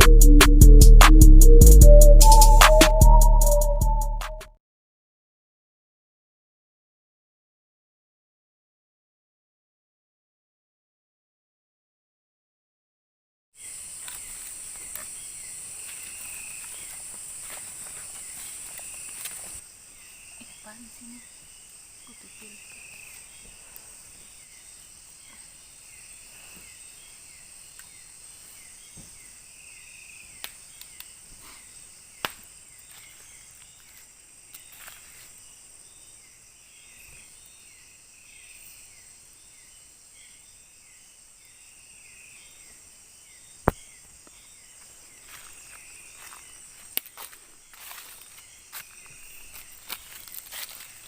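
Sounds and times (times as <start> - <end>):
insect chirping calls: 13.6 - 51.0
insects droning: 13.6 - 51.0.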